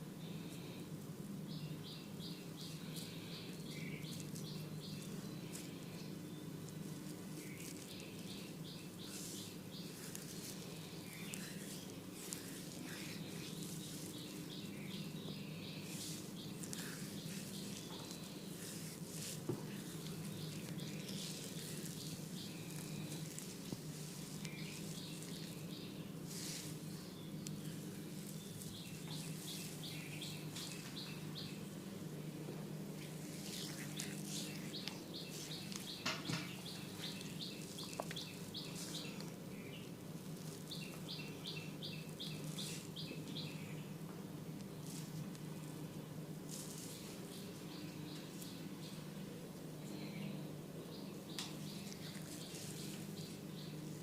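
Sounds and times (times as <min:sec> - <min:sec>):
birds chirping: 0:00.0 - 0:54.0
steady low hum: 0:00.0 - 0:54.0
hands rubbing oiled scalp: 0:06.7 - 0:31.8, 0:32.8 - 0:39.5, 0:40.2 - 0:43.4, 0:46.4 - 0:48.6, 0:51.4 - 0:54.0.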